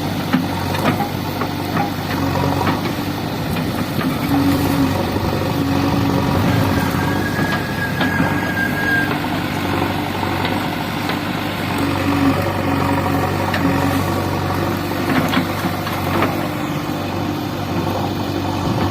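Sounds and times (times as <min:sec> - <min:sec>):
diesel engine running: 0:00.0 - 0:18.9
short higher tones: 0:05.8 - 0:09.9.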